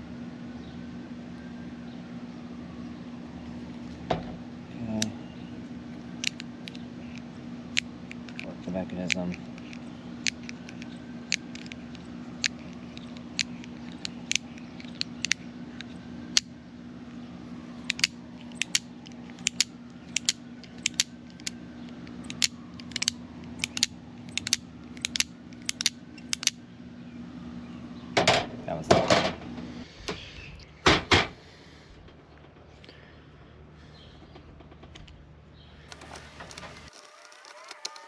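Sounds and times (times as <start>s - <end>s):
carabiner gate clicking: 17.9s - 21.5s, 22.3s - 26.6s.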